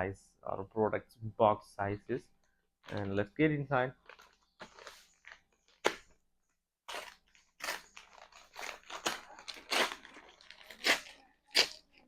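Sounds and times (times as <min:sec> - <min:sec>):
cardboard packaging rustling: 0:02.8 - 0:06.2, 0:06.9 - 0:11.3.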